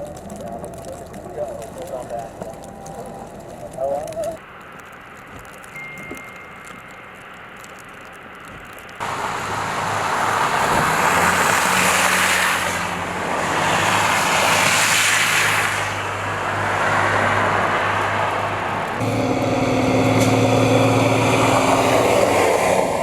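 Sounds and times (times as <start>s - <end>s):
loud rushing noise: 9.0s - 23.0s
low motor hum: 18.3s - 23.0s.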